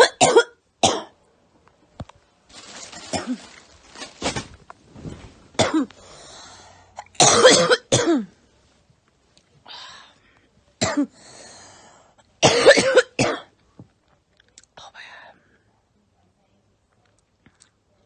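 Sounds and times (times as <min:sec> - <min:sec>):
woman coughing: 0:00.0 - 0:01.2, 0:03.0 - 0:03.6, 0:05.6 - 0:05.9, 0:07.2 - 0:08.3, 0:10.8 - 0:11.2, 0:12.4 - 0:13.5
noisy breaths: 0:05.9 - 0:07.0, 0:09.6 - 0:12.2.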